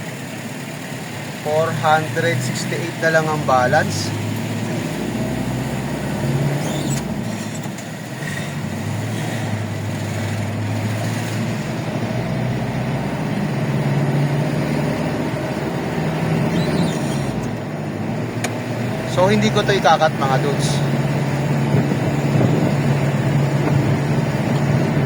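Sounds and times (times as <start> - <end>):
road noise: 0.0 - 25.0
vehicle engine humming: 0.0 - 25.0.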